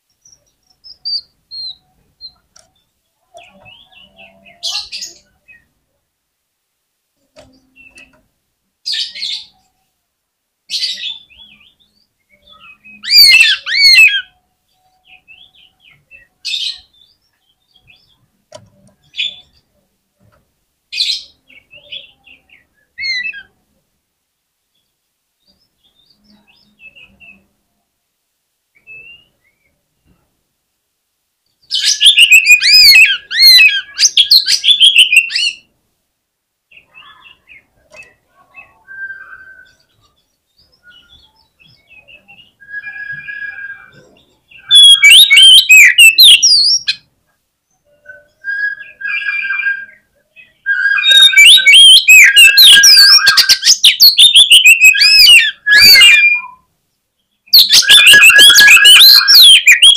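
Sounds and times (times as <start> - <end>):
bird singing sharp calls: 10.8 - 19.6, 31.6 - 35.7, 36.7 - 47.1, 47.8 - 56.6, 57.3 - 59.9.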